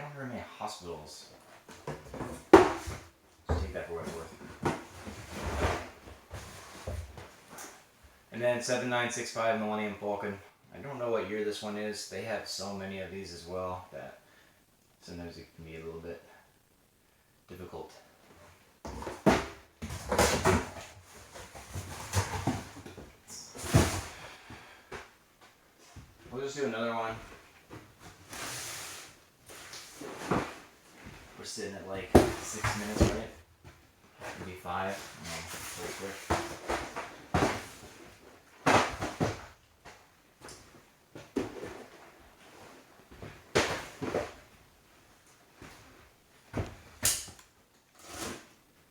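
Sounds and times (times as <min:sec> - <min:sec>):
cardboard boxes knocking and scraping: 0:01.6 - 0:07.4, 0:18.8 - 0:24.2, 0:27.2 - 0:31.3, 0:32.0 - 0:40.0, 0:42.7 - 0:44.5.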